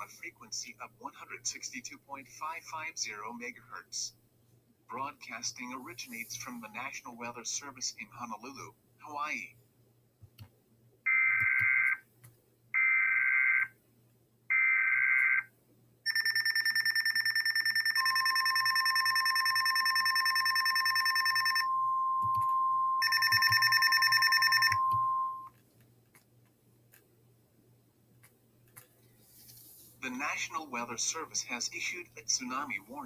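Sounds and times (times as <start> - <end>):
pulsing electronic alarm beeping: 16.1 - 25.5
steady warning tone: 16.1 - 25.5.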